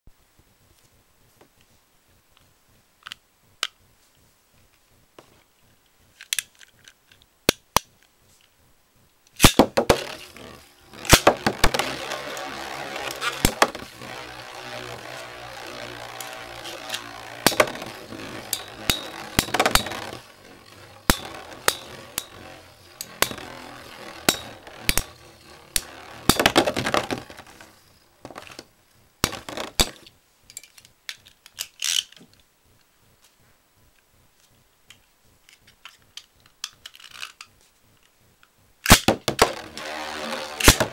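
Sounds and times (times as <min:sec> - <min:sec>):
spinning top launch clack: 0:09.4 - 0:30.0, 0:38.9 - 0:40.9
spinning tops whirring: 0:09.4 - 0:30.0, 0:39.2 - 0:40.9.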